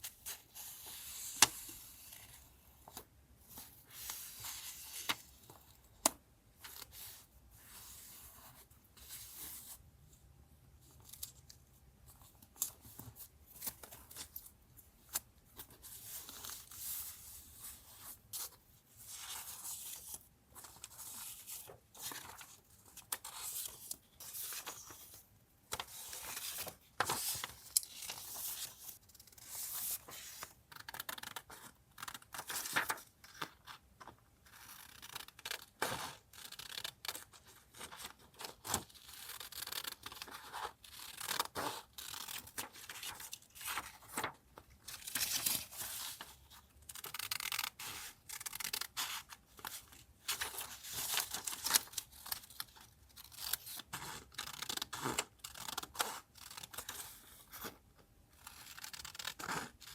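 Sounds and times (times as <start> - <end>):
paper rustling: 19.1 - 30.4, 32.4 - 33.8, 41.4 - 46.4.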